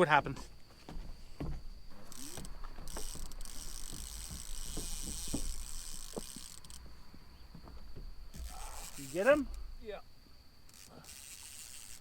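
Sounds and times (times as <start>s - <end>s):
light handling knocks: 0.3s - 8.5s
fishing reel ratcheting: 2.0s - 6.8s, 8.4s - 9.6s, 10.7s - 12.0s.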